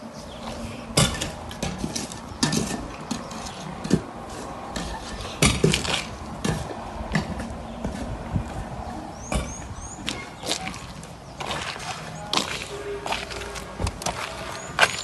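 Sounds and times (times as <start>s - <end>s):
shovel scraping in soil: 10.6s - 15.0s.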